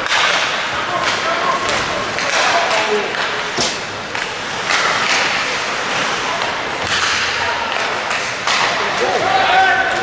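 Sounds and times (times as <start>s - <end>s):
hockey sticks and puck clacking: 0.0s - 10.0s.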